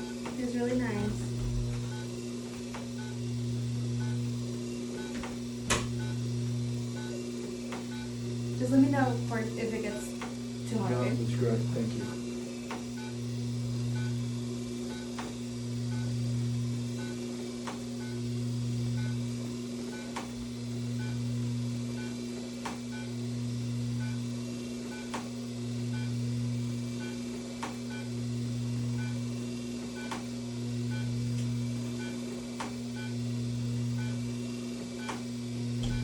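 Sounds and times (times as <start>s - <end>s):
electrical hum: 0.0s - 36.0s
low cycling tone: 0.0s - 36.0s.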